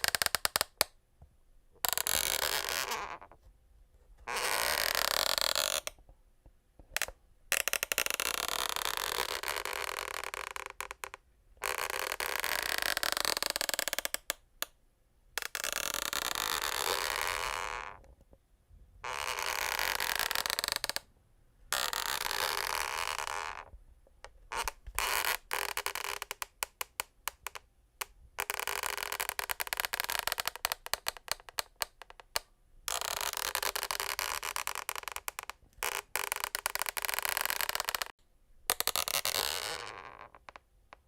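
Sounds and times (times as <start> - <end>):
wooden floorboards creaking: 33.2 - 38.1.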